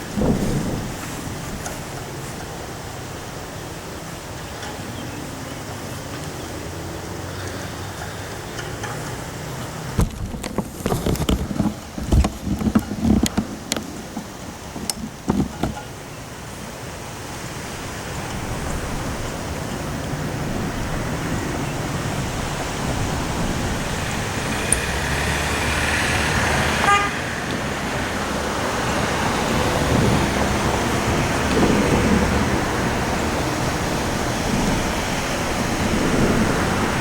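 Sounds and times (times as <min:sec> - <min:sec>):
rain: 0:00.0 - 0:37.0
storm wind: 0:00.0 - 0:37.0
horn-like toot: 0:26.8 - 0:27.4.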